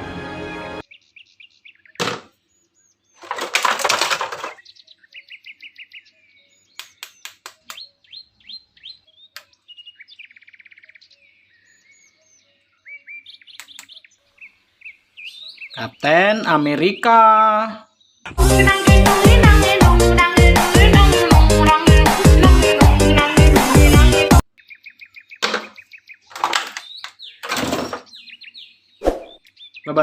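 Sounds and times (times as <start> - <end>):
music: 0.0 - 0.8, 18.3 - 24.4
small birds chirping and twittering: 0.8 - 18.7, 24.5 - 30.0
sharp clicks: 6.8 - 7.8, 13.5 - 14.0.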